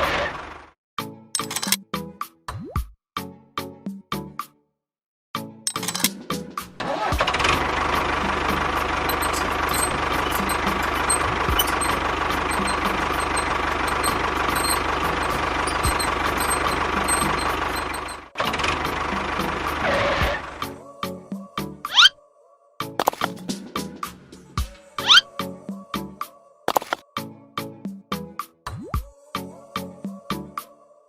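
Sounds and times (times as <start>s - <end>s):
engine running with low knock: 7.0s - 20.7s.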